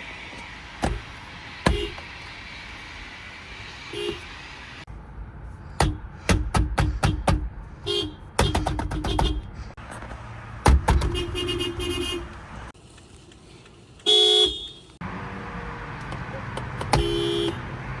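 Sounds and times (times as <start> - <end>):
car horn honking: 1.7 - 2.0, 3.9 - 4.2, 7.1 - 9.5, 11.0 - 12.3, 14.0 - 14.9, 16.9 - 17.6.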